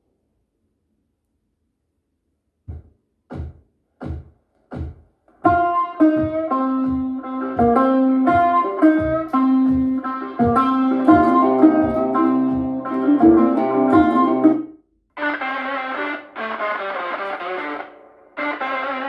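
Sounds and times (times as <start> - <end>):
guitar music with bass beat: 2.7 - 19.0
count-in hits: 5.5 - 14.6.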